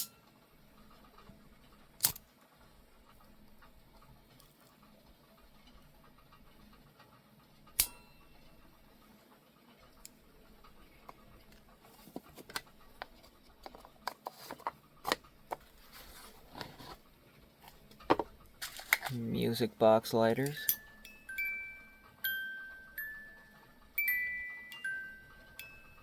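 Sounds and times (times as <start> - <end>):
metal lighters clicking: 7.8 - 8.0.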